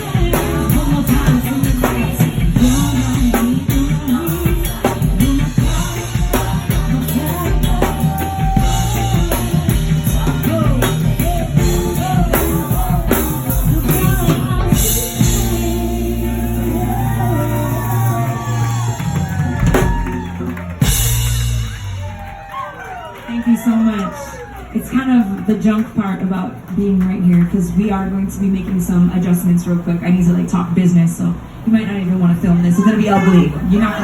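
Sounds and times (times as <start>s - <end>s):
person singing: 0.0s - 18.9s, 32.8s - 34.0s
drum kit beat: 0.0s - 22.5s, 32.8s - 34.0s
bass: 0.0s - 34.0s.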